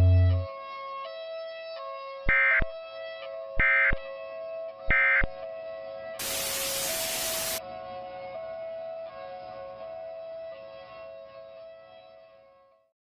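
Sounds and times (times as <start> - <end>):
soft background music: 0.0 - 6.2, 7.2 - 12.9
loud static hiss: 6.2 - 7.6.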